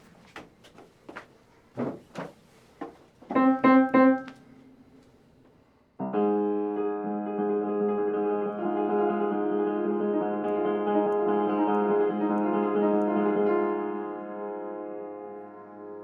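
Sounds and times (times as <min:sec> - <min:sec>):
piano chords: 0:03.3 - 0:05.0, 0:06.0 - 0:16.0.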